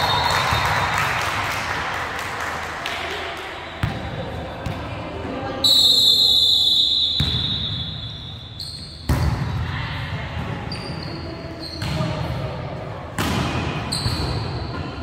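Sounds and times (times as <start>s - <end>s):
mixed voices in gym: 0.0s - 15.0s
volleyball strikes: 7.1s - 8.0s, 9.0s - 9.6s, 13.2s - 14.8s.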